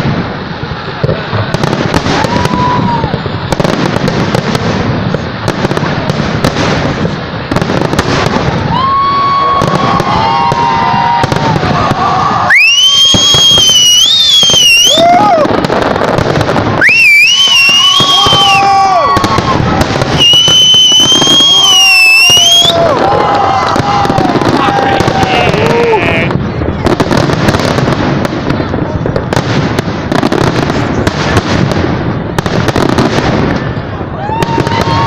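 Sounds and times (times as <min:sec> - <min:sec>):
fireworks crackling: 0:00.0 - 0:35.0
piercing firework whistle: 0:01.6 - 0:04.5, 0:06.4 - 0:26.4, 0:32.7 - 0:35.0.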